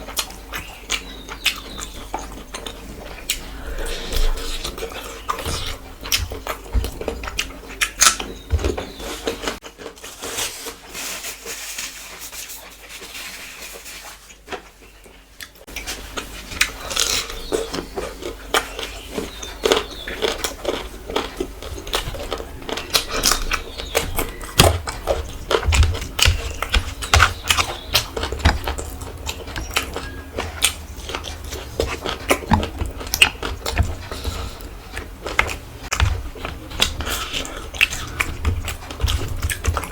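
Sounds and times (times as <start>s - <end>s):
person chewing food: 0.0s - 11.1s, 14.0s - 39.9s.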